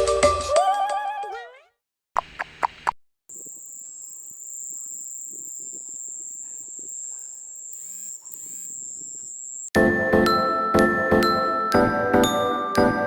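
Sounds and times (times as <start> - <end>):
faint crackle: 2.2 - 9.7
cricket ringtone chirping: 3.3 - 9.7.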